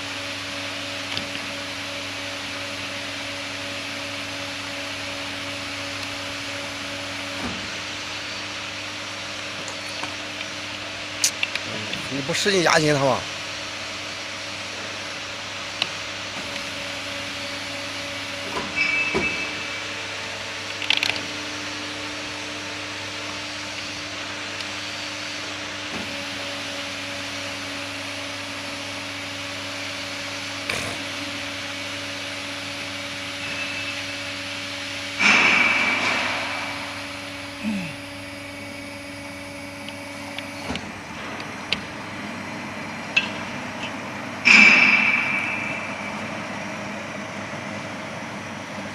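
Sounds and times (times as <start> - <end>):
machine motor hum: 0.0 - 48.9.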